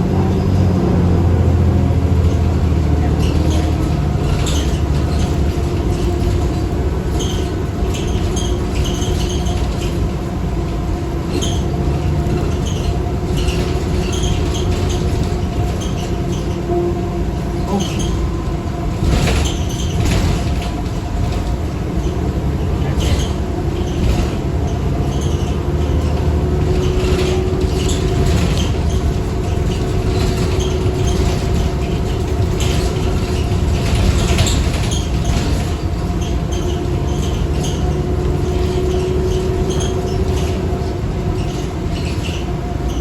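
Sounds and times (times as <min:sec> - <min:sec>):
bus engine deep rumble: 0:00.0 - 0:43.0
body rattles: 0:03.2 - 0:43.0
held whine: 0:12.3 - 0:23.0.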